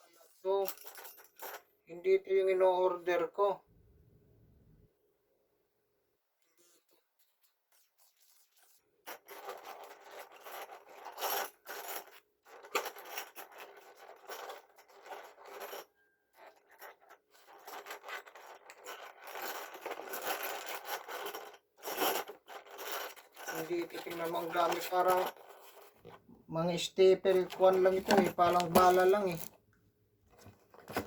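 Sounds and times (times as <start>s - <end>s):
packaging being handled: 23.4s - 26.2s, 27.2s - 29.6s, 30.3s - 31.0s
metal staples clinking: 27.3s - 29.5s.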